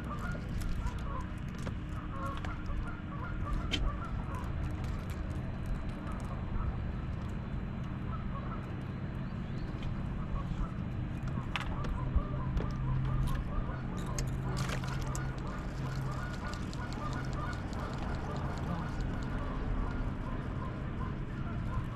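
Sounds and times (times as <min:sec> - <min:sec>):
geese honking: 0:11.7 - 0:21.9.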